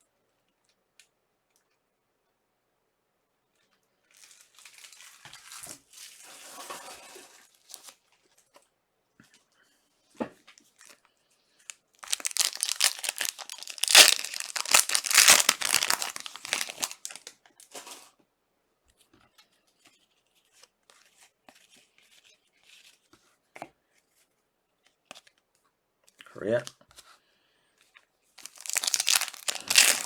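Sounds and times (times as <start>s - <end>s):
faint crackles: 12.0s - 17.2s, 28.4s - 30.0s
wrapper tearing and crinkling: 12.0s - 17.3s, 28.4s - 30.0s.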